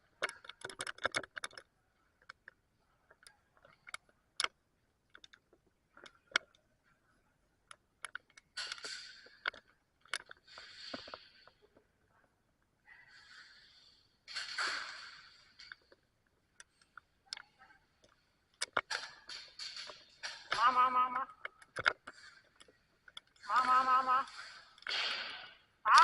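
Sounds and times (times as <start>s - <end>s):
airsoft guns firing: 24.9s - 26.0s.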